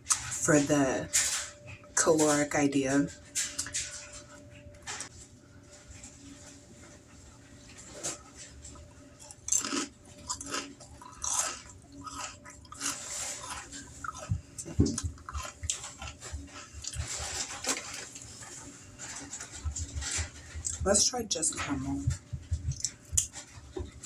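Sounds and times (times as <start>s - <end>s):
person chewing crunchy cereal: 7.9s - 20.8s.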